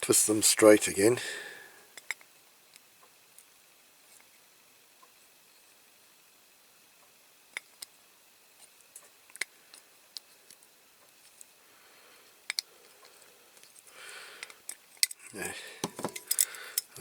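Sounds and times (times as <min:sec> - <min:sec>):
small metal clicks: 0:12.5 - 0:15.3, 0:15.9 - 0:17.0.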